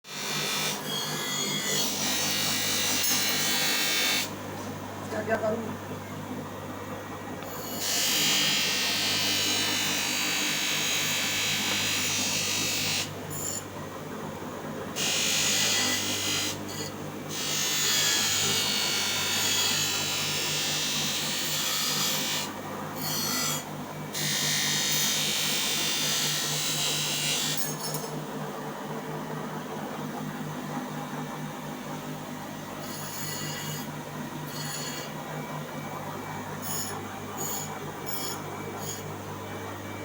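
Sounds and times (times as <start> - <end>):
tool grinding metal: 26.0 - 28.2, 32.8 - 35.2, 36.6 - 39.1.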